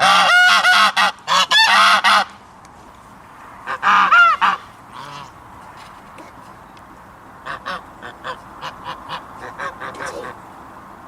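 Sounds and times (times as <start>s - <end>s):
goose honking: 0.0s - 2.3s, 3.6s - 5.4s, 7.4s - 10.4s.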